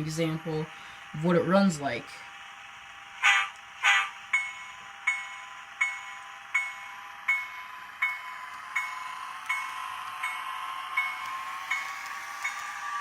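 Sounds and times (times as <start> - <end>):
diesel engine sound: 0.0 - 13.0
locomotive bell ringing: 3.9 - 13.0.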